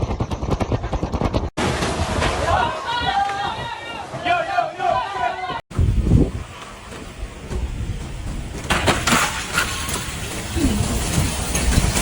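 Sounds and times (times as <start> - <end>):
sharp clicks and clatters: 0.0 - 1.5, 6.6 - 12.0
wind buffeting microphone: 5.7 - 12.0.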